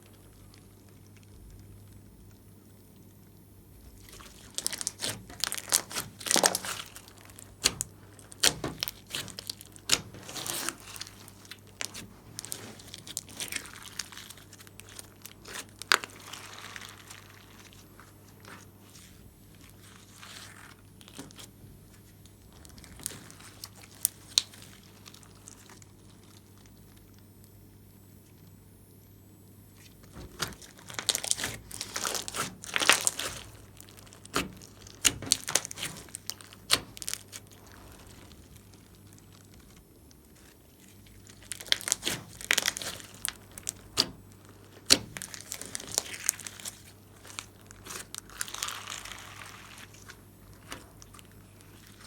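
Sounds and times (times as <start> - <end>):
slime squishing and crackling: 3.8 - 27.5, 29.7 - 52.0.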